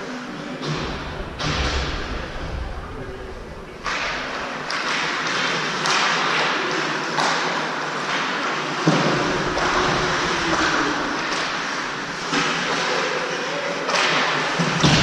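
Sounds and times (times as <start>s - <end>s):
skate blades scraping on ice: 3.9s - 15.0s.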